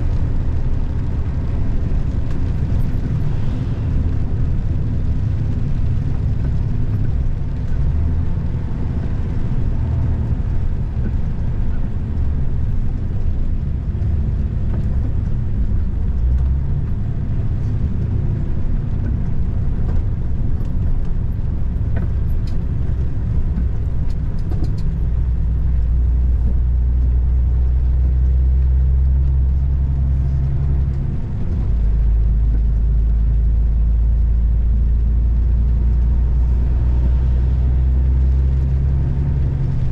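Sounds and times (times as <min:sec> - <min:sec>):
car engine and tyres rumbling: 0:00.0 - 0:39.9.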